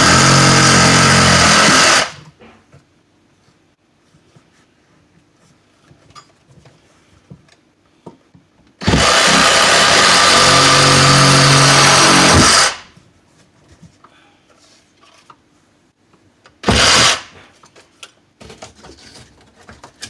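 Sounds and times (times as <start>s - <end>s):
power saw cutting drywall: 0.0s - 2.2s, 8.8s - 12.9s, 16.6s - 17.3s.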